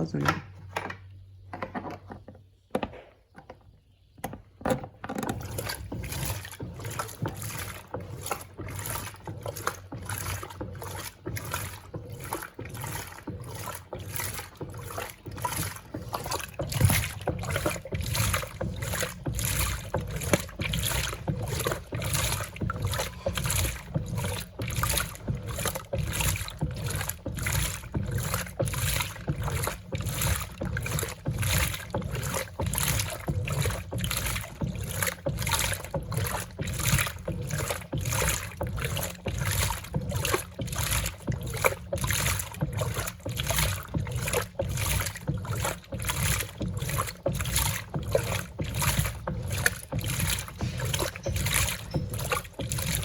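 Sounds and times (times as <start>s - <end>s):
water and clothes sloshing: 0.0s - 53.0s.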